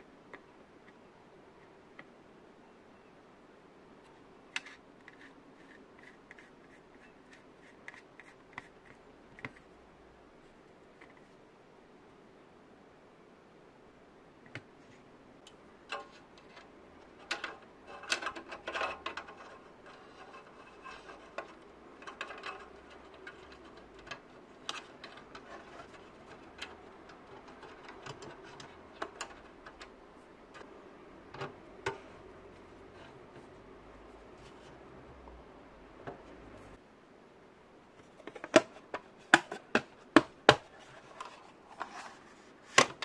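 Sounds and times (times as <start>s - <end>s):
small hard parts clicking: 15.9s - 29.9s.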